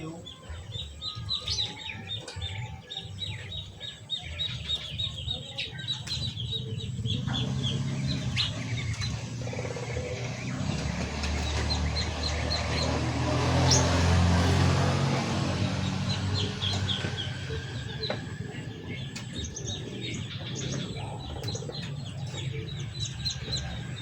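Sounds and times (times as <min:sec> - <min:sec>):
songbirds chirping: 0:00.0 - 0:24.0.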